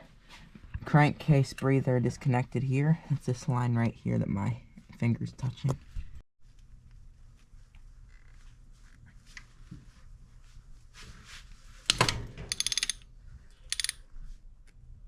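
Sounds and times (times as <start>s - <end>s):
ratchet wrench clicking: 12.5s - 13.0s, 13.7s - 14.0s.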